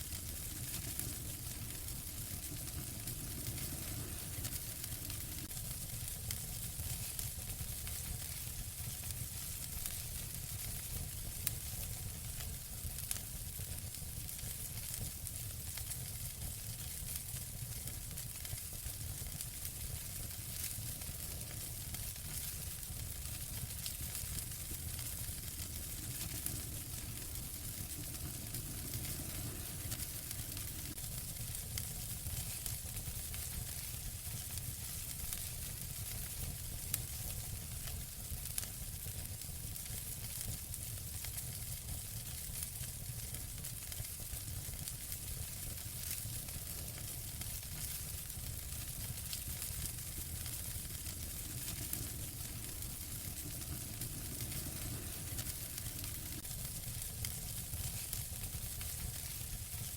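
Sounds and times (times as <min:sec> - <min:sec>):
wood fire crackling: 0:00.0 - 0:59.9
low rumble: 0:00.5 - 0:05.6, 0:23.6 - 0:31.0, 0:49.6 - 0:56.5.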